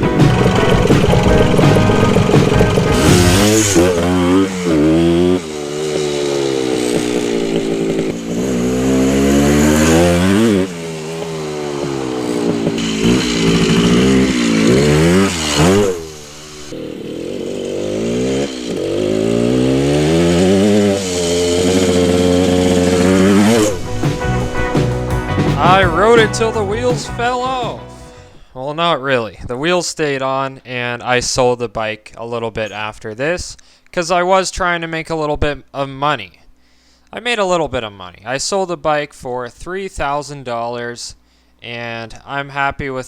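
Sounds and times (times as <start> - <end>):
motorcycle engine revving through gears: 0.0 - 25.6.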